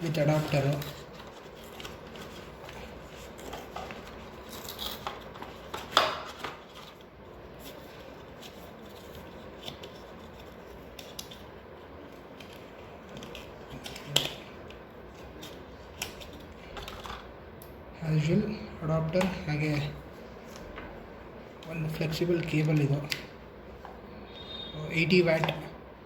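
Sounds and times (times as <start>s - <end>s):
packaging crinkling and rubbing: 0.0s - 17.2s.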